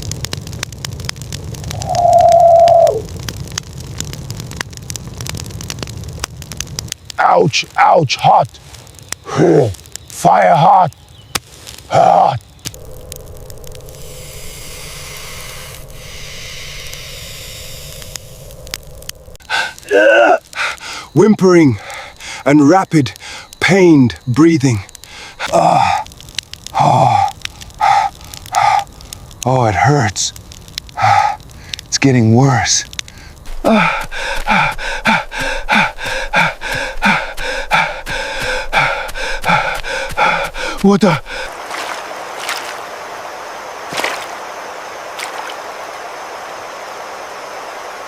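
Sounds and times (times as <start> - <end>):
open fire crackling: 0.0 - 48.0
person whimpering in pain: 19.5 - 20.8, 25.4 - 26.1, 26.7 - 28.8, 33.5 - 41.5.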